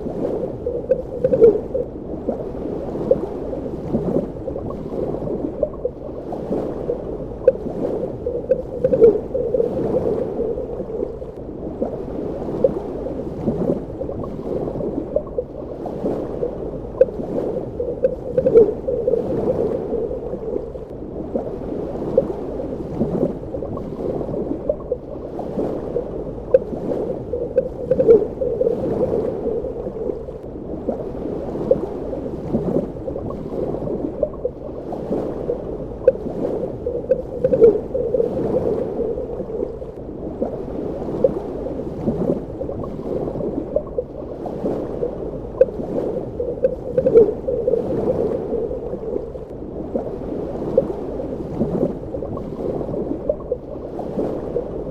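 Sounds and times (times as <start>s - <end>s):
muffled underwater rush: 0.0s - 54.9s
bubbling pops and gurgles: 0.7s - 1.9s, 7.4s - 11.4s, 16.9s - 20.7s, 25.7s - 30.3s, 45.5s - 49.3s.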